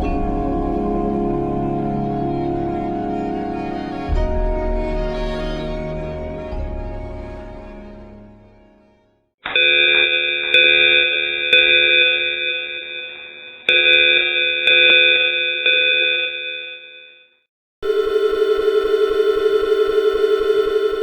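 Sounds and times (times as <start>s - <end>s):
music: 0.0s - 9.3s.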